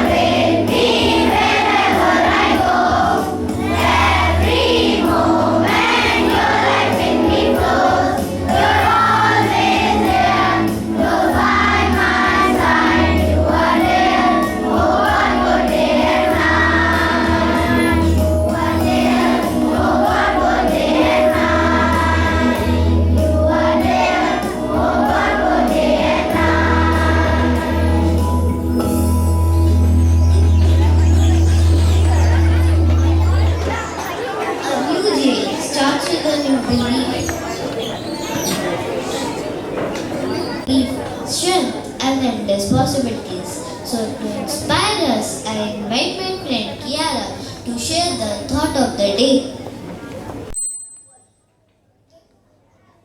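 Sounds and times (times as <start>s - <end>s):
group singing in chorus: 0.0s - 28.6s
instrumental accompaniment: 0.0s - 34.6s.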